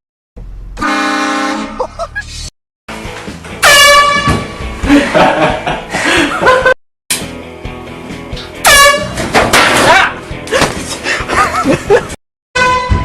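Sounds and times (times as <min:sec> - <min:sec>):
air horn blaring: 0:00.8 - 0:01.8, 0:03.6 - 0:04.6, 0:08.6 - 0:09.2, 0:12.6 - 0:13.0
person yelling and shouting: 0:09.8 - 0:10.2.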